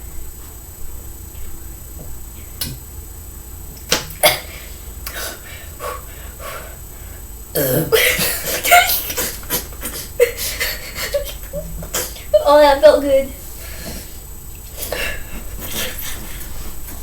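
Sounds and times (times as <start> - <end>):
loud rough burp: 7.5 - 8.0.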